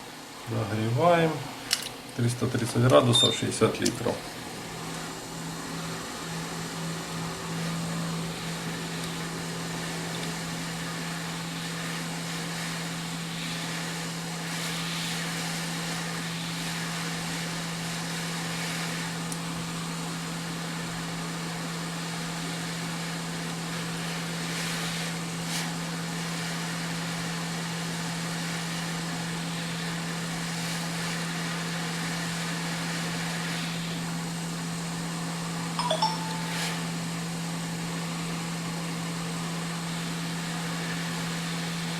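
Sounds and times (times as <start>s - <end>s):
hot-air station hum: 0.0s - 41.9s
hiss of air: 7.7s - 19.3s.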